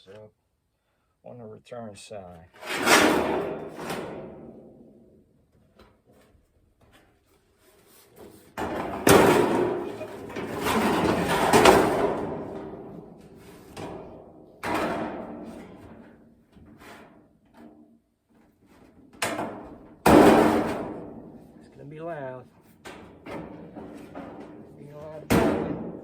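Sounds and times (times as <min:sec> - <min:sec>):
loud metallic bangs: 0:02.6 - 0:04.7, 0:08.6 - 0:16.0, 0:19.2 - 0:21.6, 0:23.0 - 0:26.0
sheet metal clanking and rattling: 0:02.6 - 0:04.9, 0:08.6 - 0:17.8, 0:18.6 - 0:21.7, 0:22.6 - 0:26.0.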